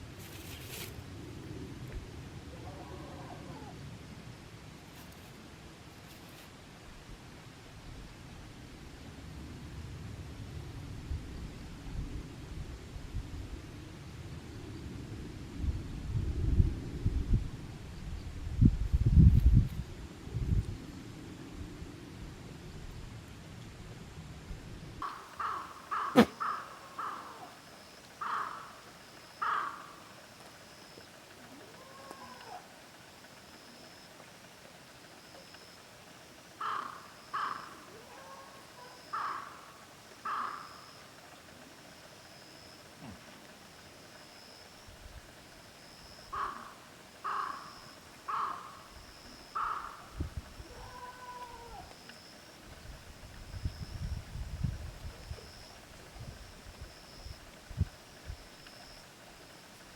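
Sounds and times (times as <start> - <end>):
crow cawing: 25.0 - 27.5, 28.2 - 28.8, 29.4 - 30.1, 36.6 - 37.9, 39.1 - 40.8, 46.3 - 48.9, 49.6 - 50.2.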